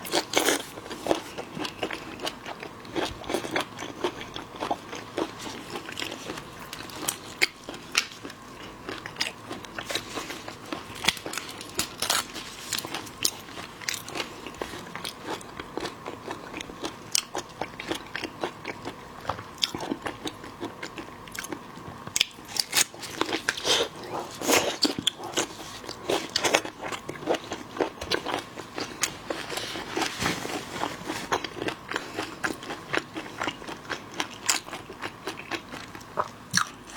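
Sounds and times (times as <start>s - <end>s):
crunching and chewing seafood: 0.0s - 36.9s.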